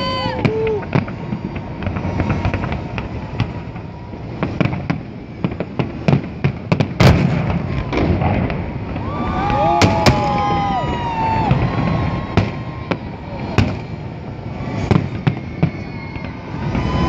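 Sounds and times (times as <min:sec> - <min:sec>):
fireworks bangs and crackles: 0:00.0 - 0:17.0
whistling tone: 0:15.2 - 0:17.0.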